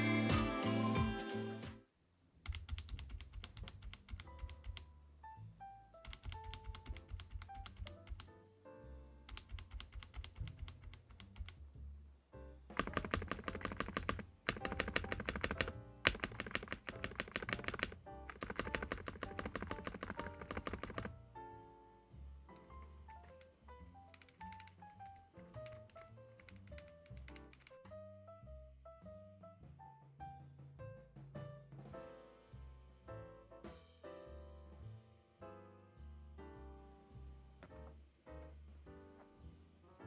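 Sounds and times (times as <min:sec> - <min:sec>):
quiet background music: 0:00.0 - 0:01.9, 0:02.6 - 0:40.0
mechanical keyboard typing: 0:02.4 - 0:04.9, 0:06.0 - 0:08.4, 0:09.2 - 0:11.6, 0:12.8 - 0:21.2, 0:22.6 - 0:27.8.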